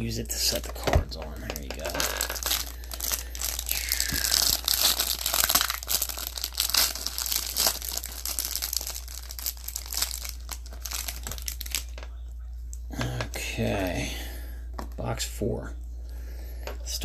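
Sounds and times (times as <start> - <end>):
low electrical hum: 0.0 - 17.0
plastic wrapping crinkling: 0.3 - 12.2.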